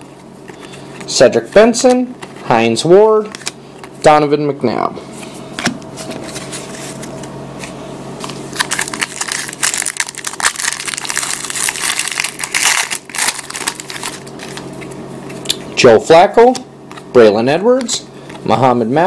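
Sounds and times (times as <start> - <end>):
faint steady hum: 0.0 - 19.0
wrapper crinkling and crackling: 8.5 - 15.0.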